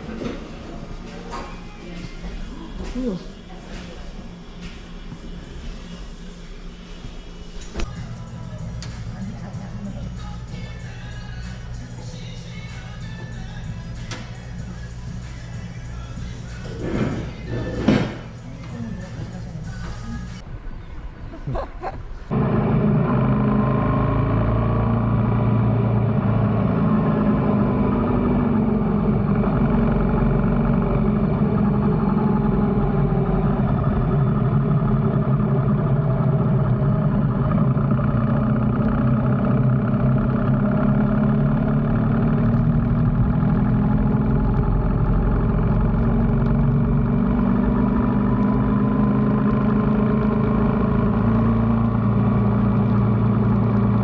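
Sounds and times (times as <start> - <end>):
motorcycle engine running: 22.3 - 54.0.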